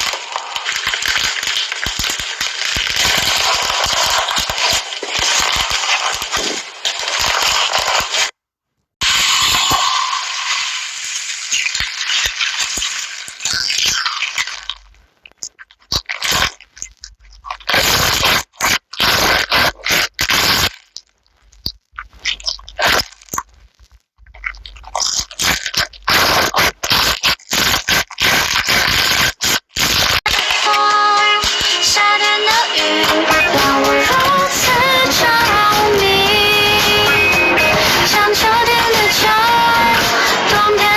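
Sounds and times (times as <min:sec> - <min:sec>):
slime squeezed crackling: 0:11.5 - 0:30.8.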